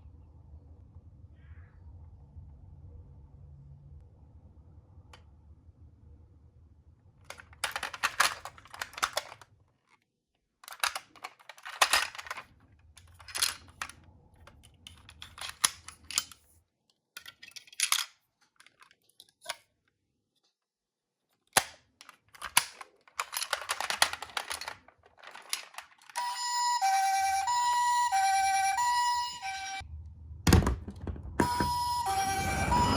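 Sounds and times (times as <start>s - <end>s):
toy car clicking and rattling: 7.3s - 9.6s, 10.6s - 16.5s, 17.2s - 19.6s, 21.6s - 29.8s
toy two-tone siren: 26.2s - 29.8s, 31.4s - 32.9s.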